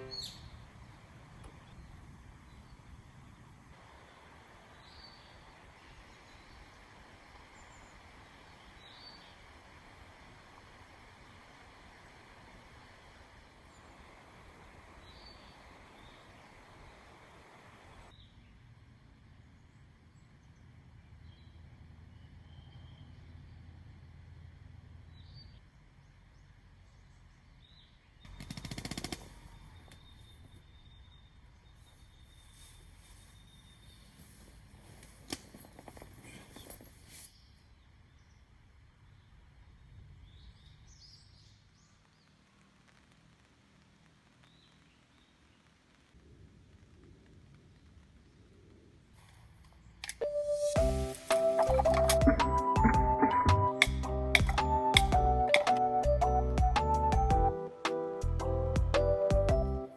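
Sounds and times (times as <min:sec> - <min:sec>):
faint high chirps: 0:00.0 - 0:00.6
high bird calls: 0:00.0 - 0:00.7
faint bird chirp: 0:00.0 - 0:03.0, 0:03.9 - 0:09.5, 0:14.9 - 0:18.7, 0:19.4 - 0:23.7, 0:29.3 - 0:35.0
faint steady hiss: 0:00.0 - 0:20.8, 0:28.9 - 0:59.9
rapid rattle of clicks: 0:28.3 - 0:29.3.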